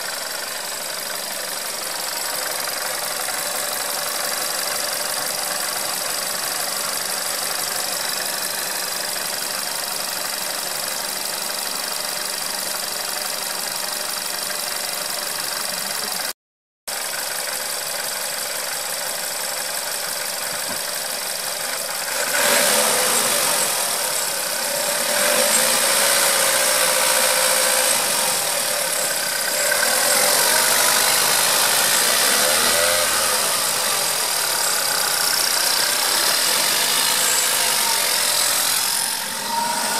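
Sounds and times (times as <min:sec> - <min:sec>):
car engine idling: 0:00.0 - 0:16.3, 0:16.9 - 0:39.9
engine rattle: 0:00.0 - 0:39.9
engine whistle: 0:22.1 - 0:39.9.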